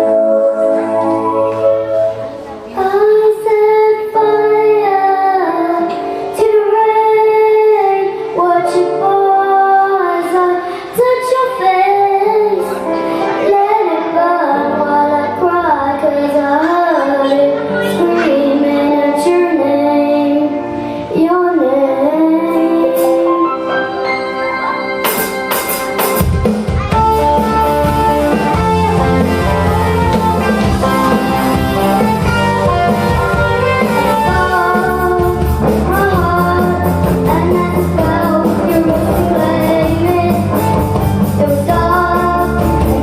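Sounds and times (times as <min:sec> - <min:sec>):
sustained instrumental accompaniment: 0:00.0 - 0:03.2, 0:22.3 - 0:43.0
young woman singing: 0:02.6 - 0:24.0, 0:28.9 - 0:43.0
drums: 0:22.8 - 0:23.4, 0:24.9 - 0:43.0.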